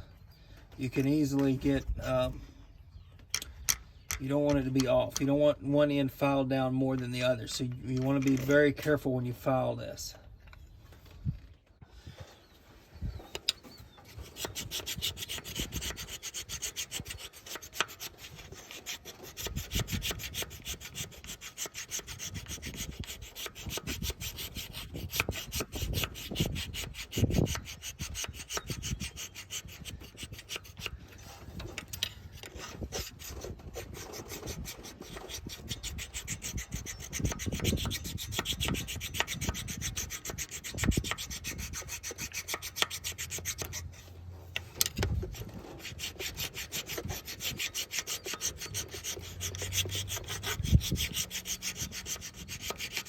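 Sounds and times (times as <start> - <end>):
hand file rasping on metal: 14.0 - 53.0.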